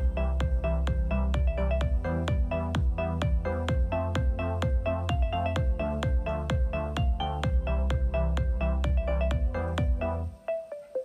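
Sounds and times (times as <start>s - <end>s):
steady bass: 0.0s - 10.4s
plucked keyboard-like notes: 0.0s - 11.0s.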